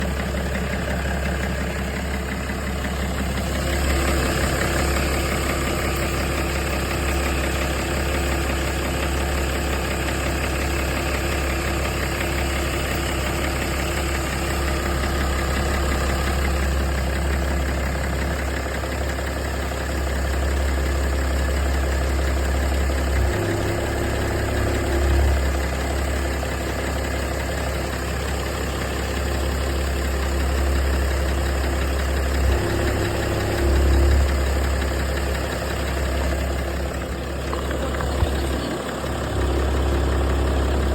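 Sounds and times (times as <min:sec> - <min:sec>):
diesel engine idling: 0:00.0 - 0:40.9
engine knocking: 0:00.0 - 0:40.9.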